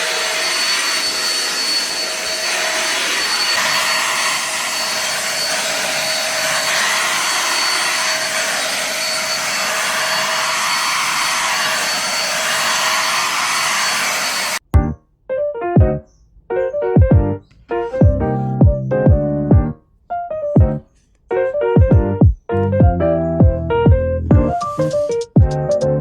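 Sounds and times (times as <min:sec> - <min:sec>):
vacuum cleaner whining: 0:00.0 - 0:14.7, 0:24.5 - 0:25.3.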